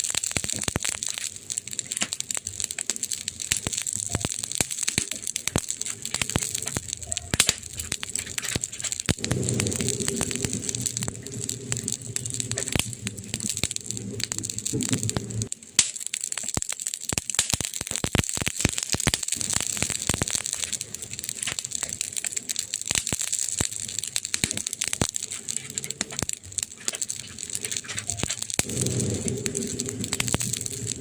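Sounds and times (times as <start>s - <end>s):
wood fire crackling: 0.0s - 31.0s
low hum: 8.0s - 15.5s, 27.6s - 31.0s.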